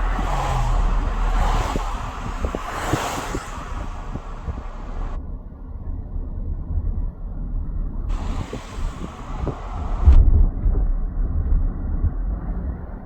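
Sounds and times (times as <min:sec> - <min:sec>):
wind buffeting microphone: 0:00.0 - 0:05.2, 0:08.1 - 0:13.0.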